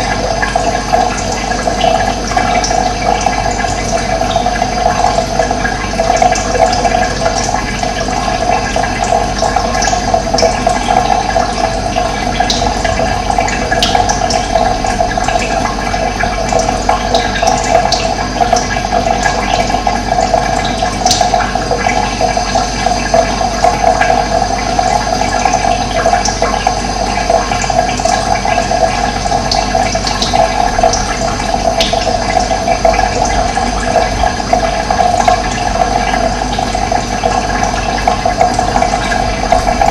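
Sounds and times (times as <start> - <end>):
running water rushing: 0.0 - 39.9.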